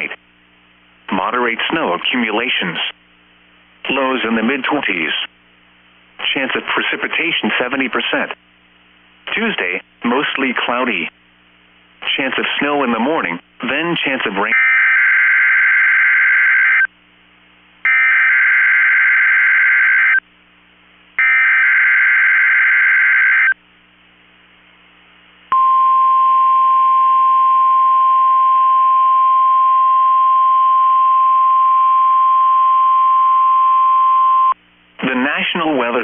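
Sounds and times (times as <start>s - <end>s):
steady high alarm tone: 21.2s - 23.6s.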